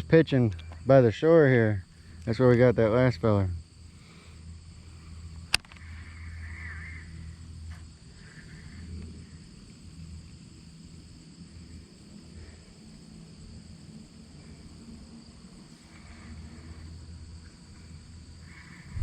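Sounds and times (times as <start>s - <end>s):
insects trilling: 0.0s - 19.0s
faint low rumble: 18.8s - 19.0s.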